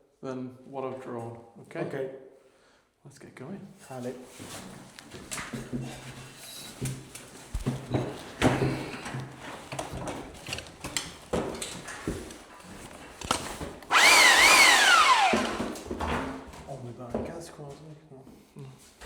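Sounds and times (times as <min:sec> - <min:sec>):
power tool motor whining: 0:13.9 - 0:15.8.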